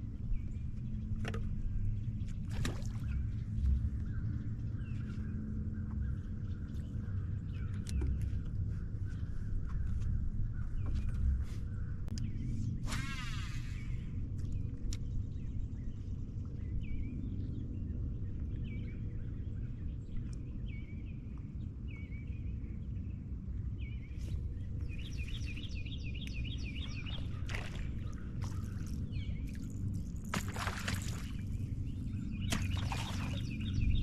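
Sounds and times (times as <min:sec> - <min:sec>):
steady low rumble: 0:00.0 - 0:34.0
songbird chirping: 0:13.5 - 0:34.0.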